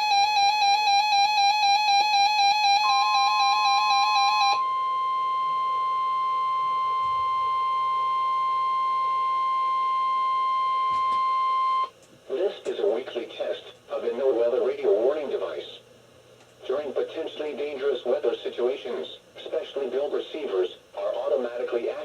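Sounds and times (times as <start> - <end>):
buzzy pulsing alarm beep: 0.0 - 11.9
steady warning alarm tone: 0.0 - 12.0.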